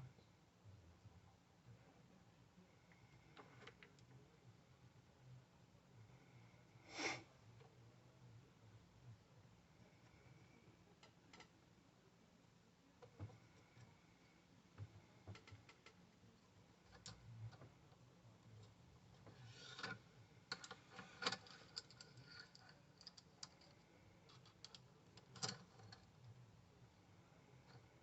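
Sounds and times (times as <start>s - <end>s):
small parts clicking and tapping: 11.0s - 11.6s, 14.8s - 16.0s, 16.8s - 18.0s, 18.6s - 26.4s.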